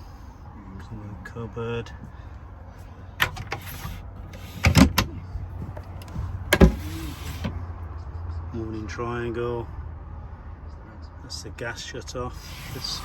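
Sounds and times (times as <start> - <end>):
cupboard doors clicking and knocking: 3.2 - 7.6.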